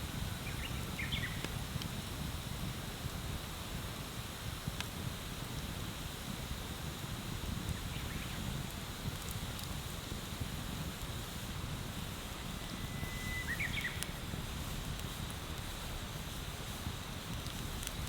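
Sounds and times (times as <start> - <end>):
bonfire crackling: 0.0 - 18.0
bird whistling call: 12.6 - 14.1.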